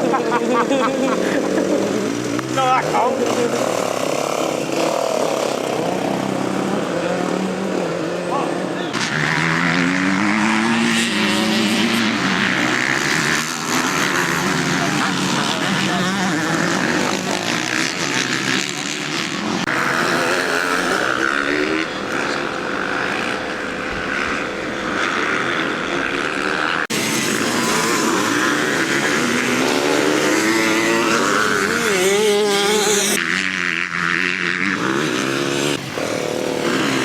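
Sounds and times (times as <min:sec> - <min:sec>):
motocross bike engines revving: 0:00.0 - 0:37.0.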